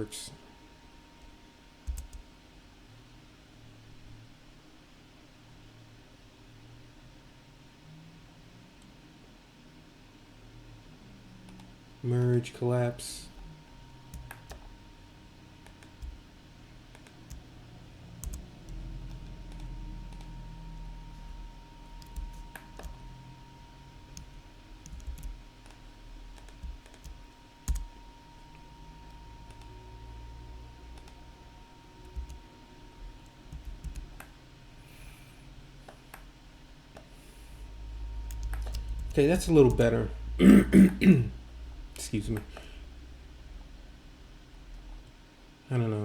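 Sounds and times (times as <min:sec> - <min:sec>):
low room rumble: 0:00.0 - 0:46.0
keyboard and mouse clicks: 0:18.2 - 0:20.3, 0:26.4 - 0:27.9, 0:38.3 - 0:39.8.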